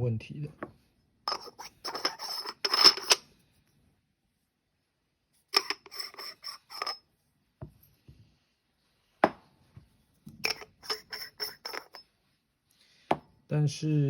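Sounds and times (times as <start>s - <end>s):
metallic clicks and scrapes: 1.3s - 3.3s, 5.5s - 7.0s, 10.4s - 12.1s.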